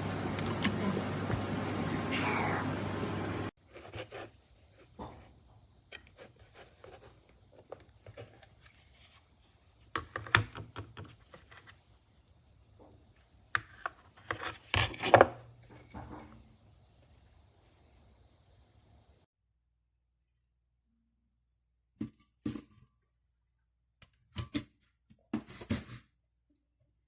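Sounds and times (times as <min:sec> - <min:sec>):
faint steady hum: 0:00.0 - 0:03.5
objects knocking and rubbing: 0:00.0 - 0:05.2.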